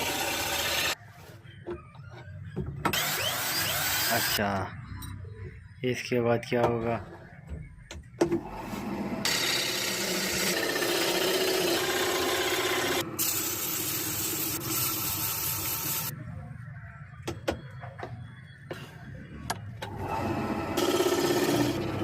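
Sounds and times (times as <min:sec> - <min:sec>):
lathe chisel scraping spinning wood: 0:08.8 - 0:13.4, 0:20.0 - 0:22.0.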